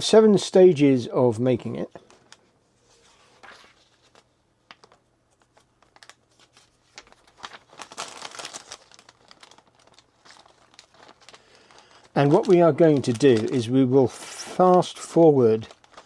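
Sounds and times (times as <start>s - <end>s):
plastic packaging crinkling: 3.4s - 16.0s.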